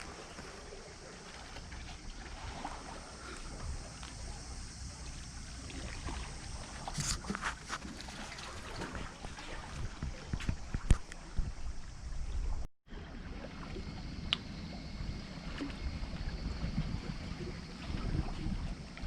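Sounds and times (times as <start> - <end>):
water lapping: 0.0 - 19.0
wind buffeting microphone: 5.8 - 12.6, 13.3 - 19.0.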